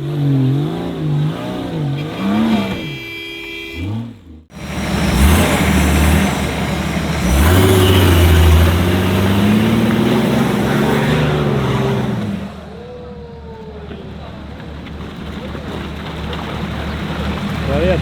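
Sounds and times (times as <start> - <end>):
engine revving hard: 0.0 - 3.0, 3.7 - 12.8.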